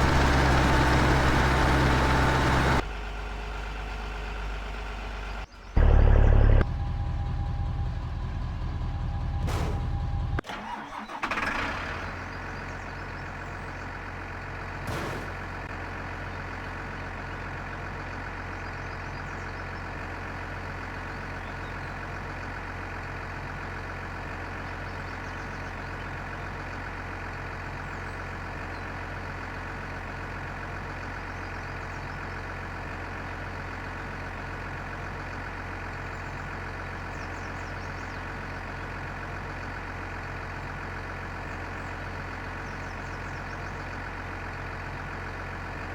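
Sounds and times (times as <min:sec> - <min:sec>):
machine engine-like hum: 0:00.0 - 0:20.1.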